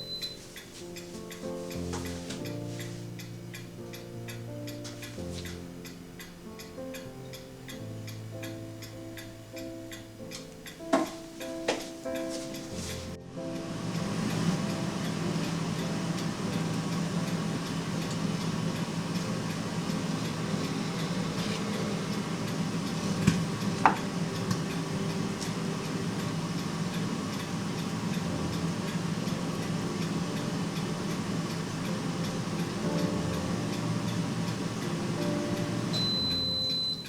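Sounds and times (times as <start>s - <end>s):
appliance motor humming: 12.6s - 37.0s.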